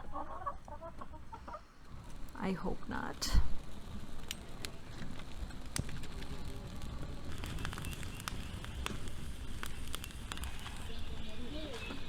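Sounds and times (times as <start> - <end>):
fire crackling: 0.0 - 12.0
sharp pops and clicks: 3.6 - 11.1.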